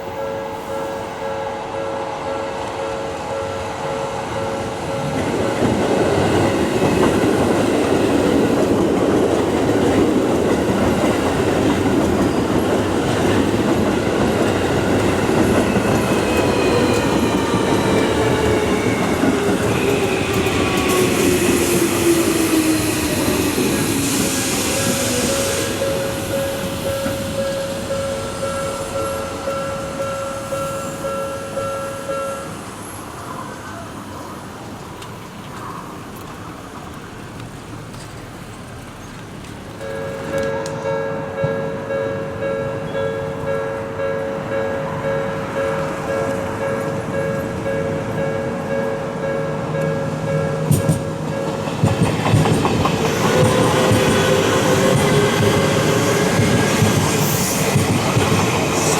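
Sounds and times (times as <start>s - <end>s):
level crossing warning bell: 0.0s - 7.2s, 24.7s - 32.8s, 39.8s - 51.9s.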